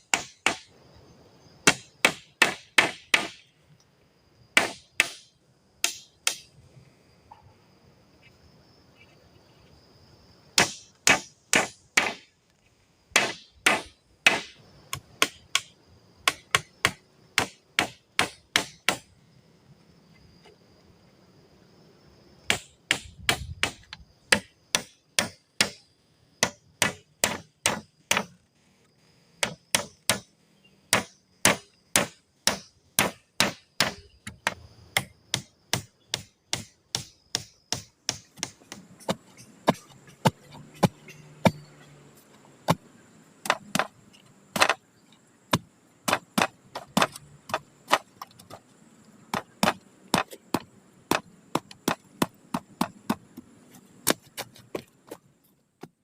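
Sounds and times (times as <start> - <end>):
chopping strikes on wood: 0.1 - 0.7, 1.6 - 3.4, 4.6 - 6.5, 10.6 - 12.2, 13.2 - 19.1, 22.5 - 25.8, 26.4 - 28.3, 29.4 - 30.3, 30.9 - 41.6, 43.4 - 44.8, 45.5 - 48.6, 49.3 - 53.2, 54.0 - 55.2.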